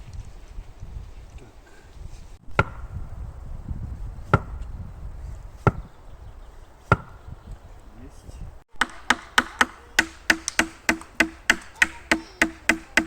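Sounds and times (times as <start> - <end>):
axe chopping wood: 2.5 - 2.9, 4.3 - 4.6, 5.6 - 5.9, 6.9 - 7.2, 8.8 - 13.0.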